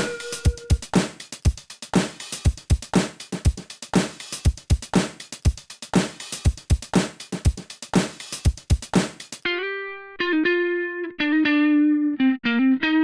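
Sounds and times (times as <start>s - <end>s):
drum machine beat: 0.0s - 9.4s.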